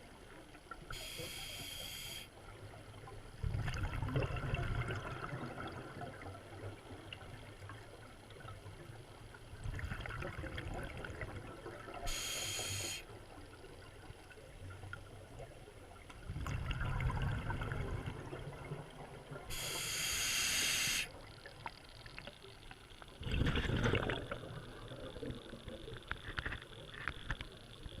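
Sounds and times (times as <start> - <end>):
regulator breathing hiss: 0.9 - 2.3, 12.1 - 13.1, 19.5 - 21.2
exhaled bubbles underwater: 3.3 - 8.6, 9.5 - 12.8, 16.2 - 19.9, 23.2 - 26.0.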